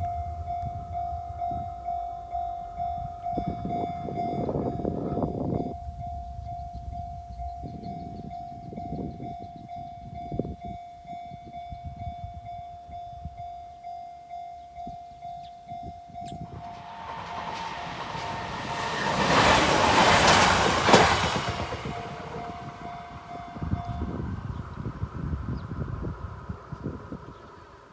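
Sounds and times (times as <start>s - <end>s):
rushing train noise: 0.0s - 12.6s, 14.8s - 27.9s
level crossing warning bell: 0.0s - 25.4s
train wheels thumping over rail joints: 16.5s - 23.4s.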